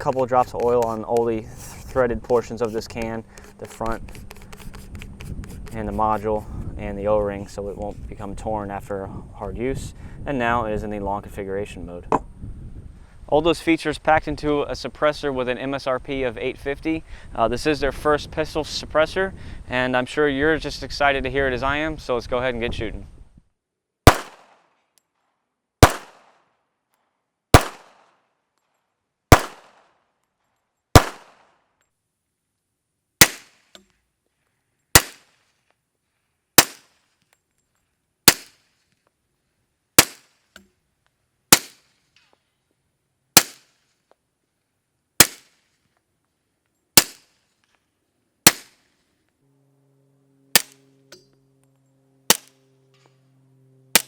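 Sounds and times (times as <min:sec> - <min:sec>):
suppressed pistol shots: 0:24.1 - 0:24.5, 0:25.8 - 0:26.2, 0:27.6 - 0:27.9, 0:29.3 - 0:29.7, 0:31.0 - 0:31.4, 0:35.0 - 0:35.2, 0:36.6 - 0:36.8.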